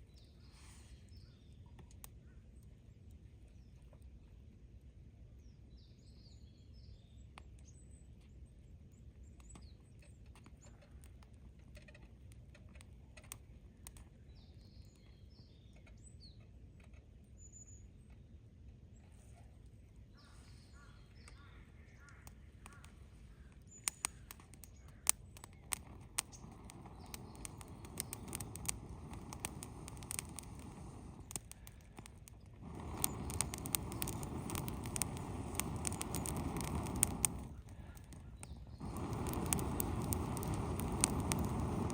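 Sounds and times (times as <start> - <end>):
small birds chirping: 0.0 - 4.3, 5.3 - 41.9
campfire crackling: 22.0 - 41.9
fire popping: 22.0 - 41.9.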